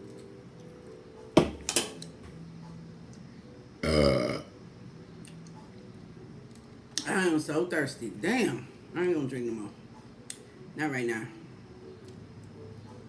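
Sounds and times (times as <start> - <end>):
woman burping: 3.8 - 4.5.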